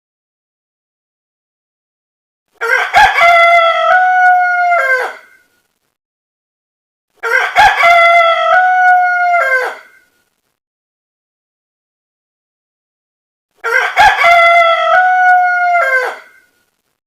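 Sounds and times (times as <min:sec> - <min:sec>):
rooster crowing: 0:02.6 - 0:05.4, 0:07.2 - 0:10.1, 0:13.6 - 0:16.6.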